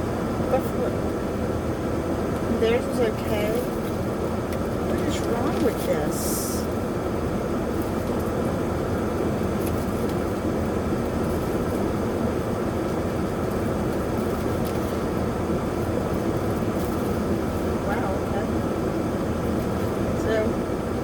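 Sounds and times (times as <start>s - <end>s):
vehicle low rumble: 0.0s - 21.0s.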